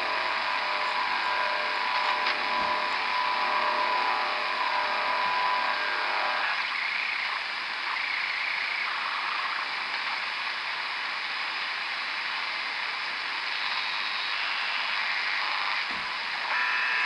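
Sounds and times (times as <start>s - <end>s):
radio static hiss: 0.0s - 17.0s
steady radio tones: 0.0s - 17.0s.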